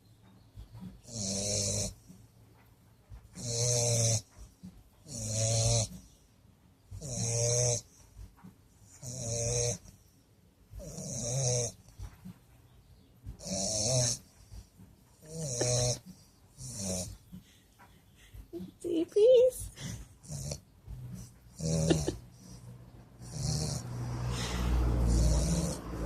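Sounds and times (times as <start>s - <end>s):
dog snoring: 0.8s - 2.1s, 3.3s - 6.2s, 6.9s - 8.1s, 8.9s - 10.1s, 10.7s - 12.1s, 13.3s - 17.4s, 19.8s - 26.0s.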